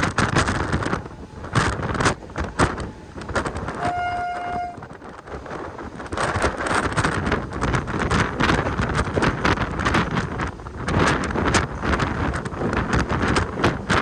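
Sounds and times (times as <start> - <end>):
train rattling on track: 0.0 - 14.0
train horn blast: 3.7 - 5.0.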